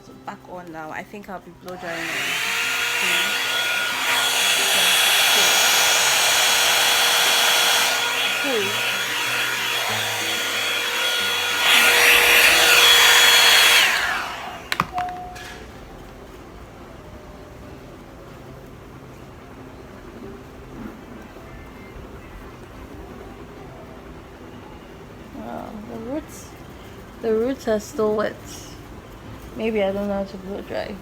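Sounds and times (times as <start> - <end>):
hair dryer whining: 1.6 - 16.0
clicks: 14.7 - 15.6.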